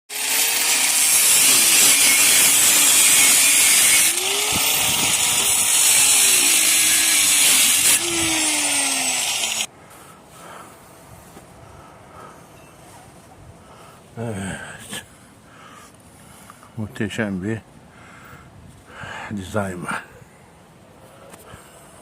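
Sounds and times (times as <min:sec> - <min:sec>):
power tool cutting steel: 0:00.1 - 0:09.7.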